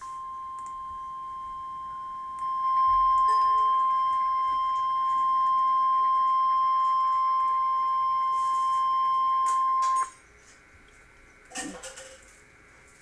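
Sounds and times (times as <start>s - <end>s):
loud alarm beep: 0.0s - 10.1s
faint radio hiss: 0.0s - 13.0s.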